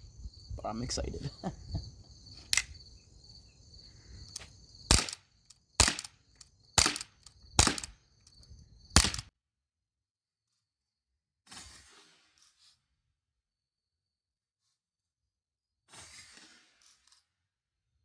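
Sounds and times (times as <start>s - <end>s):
bb pistol shots popping: 4.9s - 5.2s, 5.8s - 6.1s, 6.8s - 7.9s, 9.0s - 9.3s.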